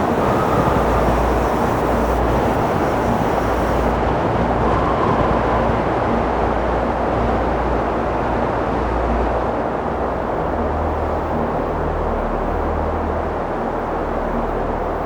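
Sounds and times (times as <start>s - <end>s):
strong wind rushing: 0.0s - 9.2s
wind buffeting microphone: 0.0s - 10.2s.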